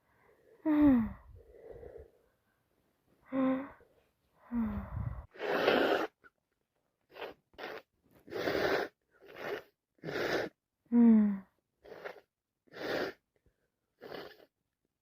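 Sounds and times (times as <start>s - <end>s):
woman gasping: 0.6s - 2.1s, 4.5s - 5.3s.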